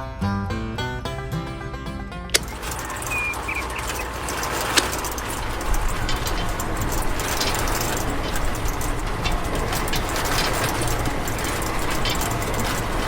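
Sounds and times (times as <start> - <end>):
small motor and gears clattering: 2.3 - 13.0.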